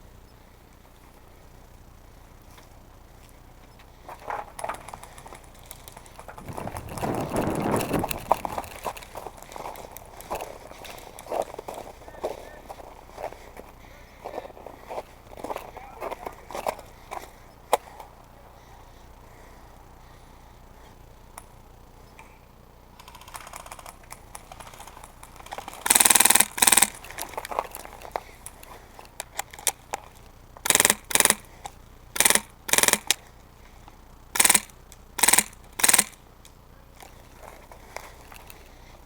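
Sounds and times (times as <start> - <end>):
airsoft gun full-auto bursts: 23.0 - 27.2, 30.6 - 33.2, 34.3 - 36.2
faint rapid gunfire: 34.4 - 36.2.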